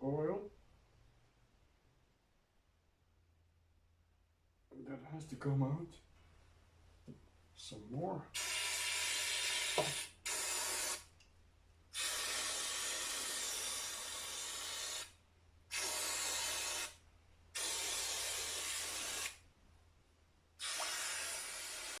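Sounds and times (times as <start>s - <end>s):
pressurised spray hissing: 8.4s - 11.1s, 12.0s - 15.1s, 15.7s - 17.0s, 17.6s - 19.4s, 20.6s - 22.0s.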